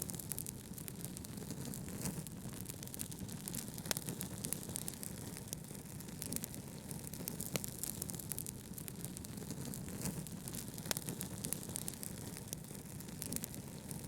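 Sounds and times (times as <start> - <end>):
wood fire crackling and popping: 0.0 - 14.0.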